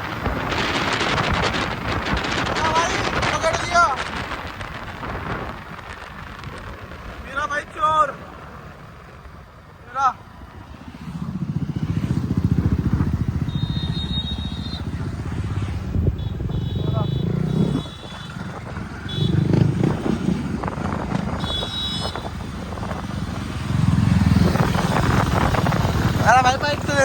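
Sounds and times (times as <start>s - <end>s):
motorcycle engine running: 10.4s - 27.0s.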